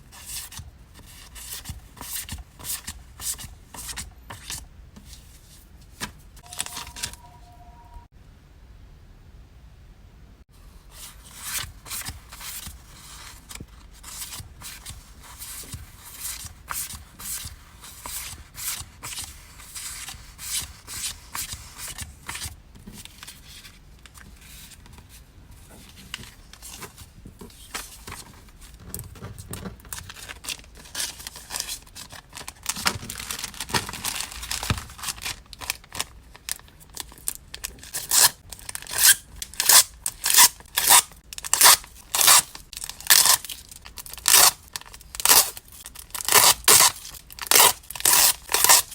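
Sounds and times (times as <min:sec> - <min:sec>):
packaging crinkling and tearing: 0:27.8 - 0:48.9.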